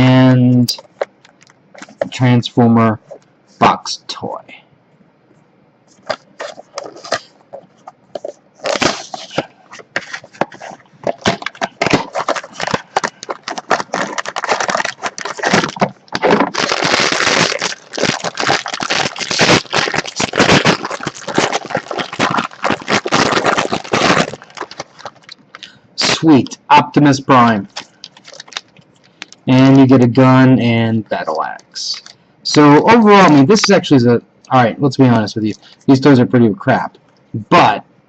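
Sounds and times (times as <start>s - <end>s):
toy packaging crinkling: 6.0s - 25.7s, 27.4s - 29.5s, 31.2s - 32.2s.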